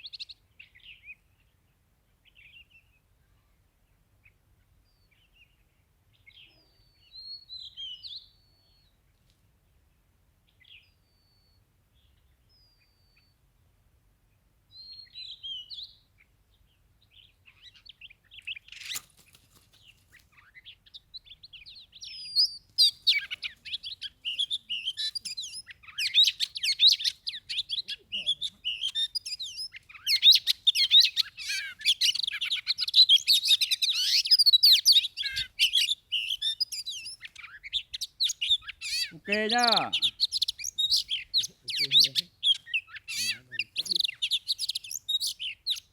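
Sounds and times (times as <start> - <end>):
birds whistling: 6.3 - 9.0, 20.4 - 45.9
birds chattering rapidly: 17.1 - 45.9.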